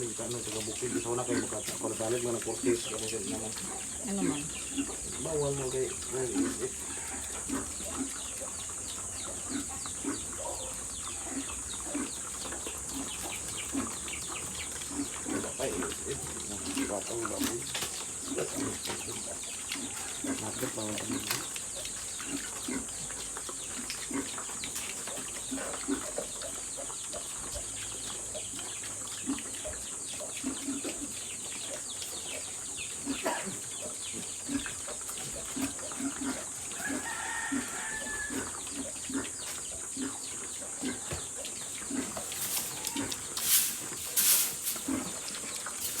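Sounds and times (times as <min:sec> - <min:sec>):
piglets grunting: 0:00.0 - 0:46.0
steady high-pitched hiss: 0:24.8 - 0:46.0
rooster crowing: 0:36.7 - 0:38.6, 0:42.6 - 0:43.2
sharp knocks and rustles: 0:41.1 - 0:46.0.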